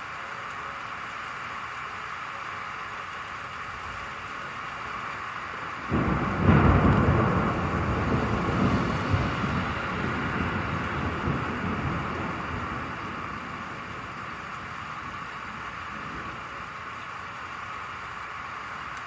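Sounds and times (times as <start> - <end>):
rain hissing: 0.0 - 19.0
thunderclap rumbling: 5.6 - 17.0.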